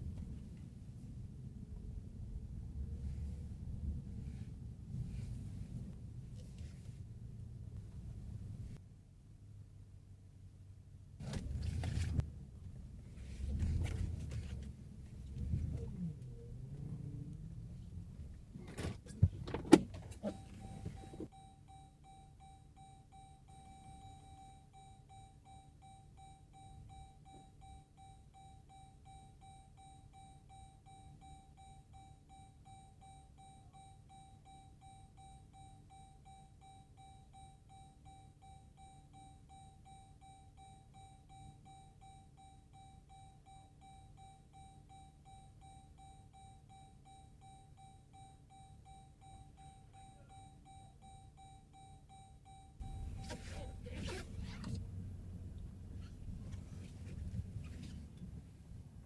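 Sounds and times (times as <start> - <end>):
vehicle warning chime beeping: 18.8 - 54.8.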